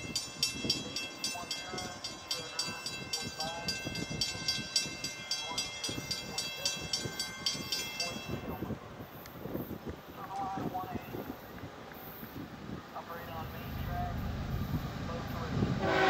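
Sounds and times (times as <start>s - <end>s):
railroad crossing bell ringing: 0.0s - 9.0s
low train rumble: 0.0s - 16.0s.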